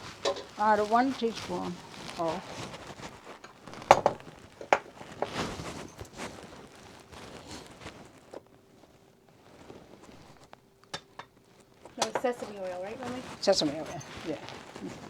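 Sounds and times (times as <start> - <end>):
kitchen things knocking and rustling: 0.0 - 1.7, 3.4 - 6.1, 10.8 - 14.2.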